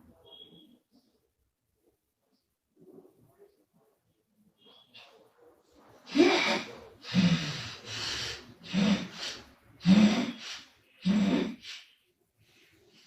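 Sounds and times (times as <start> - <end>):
woman snoring in loud snorts: 6.1 - 10.4, 11.0 - 11.7.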